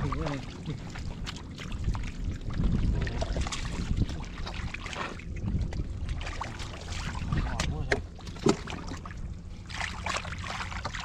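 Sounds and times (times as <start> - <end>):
muddy water sloshing: 0.0 - 11.0
wet knocks: 7.5 - 9.0.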